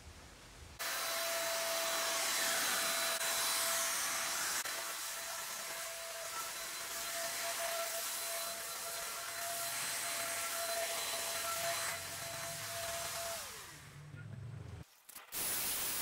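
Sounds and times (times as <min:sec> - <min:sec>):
paint spray gun hissing: 0:15.3 - 0:16.0.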